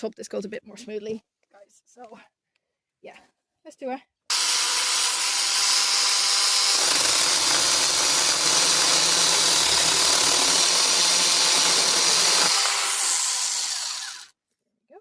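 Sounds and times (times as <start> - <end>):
power cutting tool cutting bush: 4.3 - 14.3.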